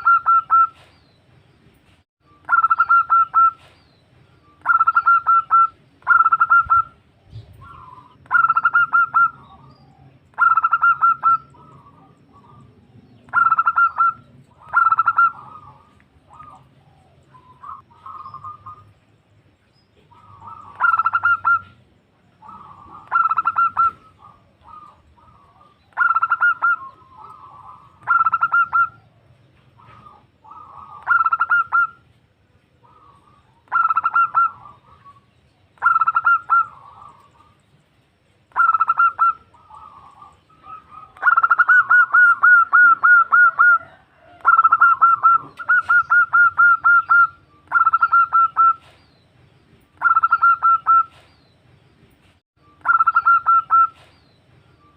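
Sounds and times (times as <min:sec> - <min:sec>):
dove stuttering cooing: 0:13.3 - 0:18.8, 0:22.4 - 0:29.0, 0:38.6 - 0:48.9.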